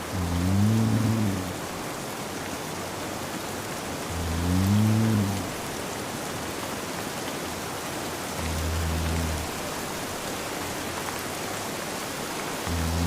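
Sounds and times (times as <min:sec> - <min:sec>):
man snoring: 0:00.0 - 0:01.6, 0:04.1 - 0:05.6, 0:08.4 - 0:09.7, 0:12.7 - 0:13.0
steady rain: 0:00.0 - 0:13.0.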